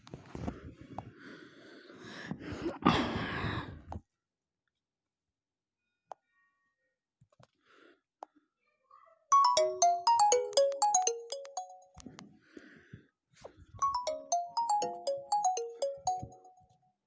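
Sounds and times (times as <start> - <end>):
phone ringtone melody: 9.3 - 12.1, 13.8 - 16.6.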